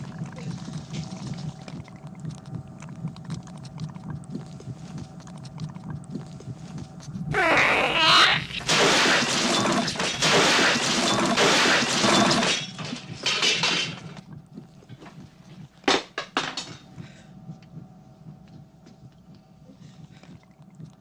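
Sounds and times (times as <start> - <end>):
dishes crashing and clattering: 8.6 - 14.2, 15.9 - 16.9.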